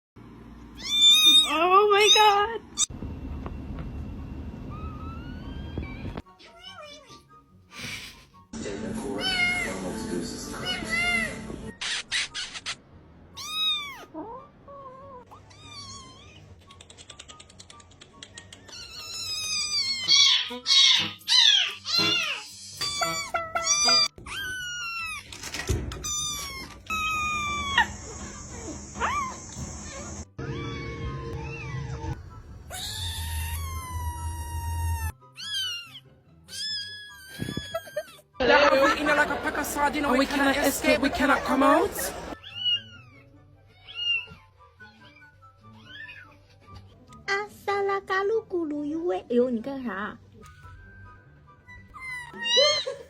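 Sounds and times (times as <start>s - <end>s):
cats meowing: 0.7s - 2.9s, 13.4s - 16.7s, 18.6s - 38.3s, 42.2s - 46.8s, 51.7s - 53.0s
background music: 6.2s - 11.8s, 38.4s - 53.0s.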